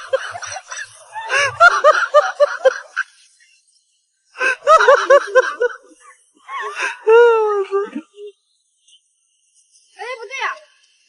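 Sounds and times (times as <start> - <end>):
high-pitched laughter: 0.0 - 3.2, 4.4 - 8.4.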